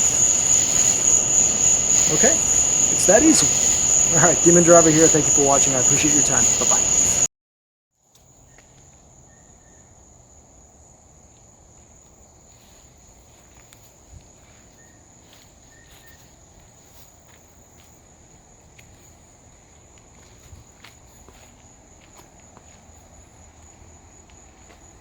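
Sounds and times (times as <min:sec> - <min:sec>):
insect trilling: 0:00.0 - 0:07.3
soft chirps: 0:00.0 - 0:07.3.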